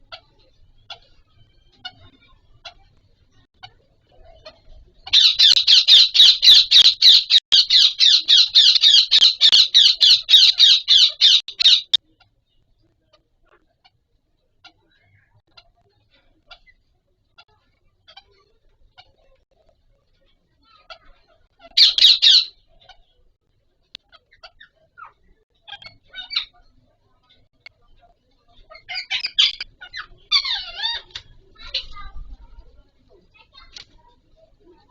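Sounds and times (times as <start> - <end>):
parakeet calling: 5.1 - 12.0, 21.7 - 22.6, 28.7 - 31.1.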